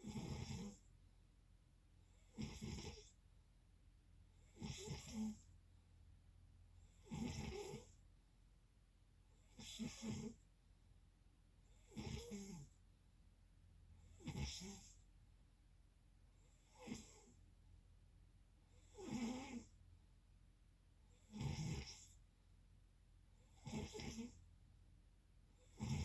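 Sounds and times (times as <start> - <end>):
short snores: 0.0 - 0.9, 2.2 - 3.2, 4.5 - 5.5, 6.9 - 8.0, 9.5 - 10.4, 11.8 - 12.8, 14.1 - 15.0, 16.6 - 17.4, 18.8 - 19.8, 21.2 - 22.2, 23.5 - 24.4, 25.6 - 26.0.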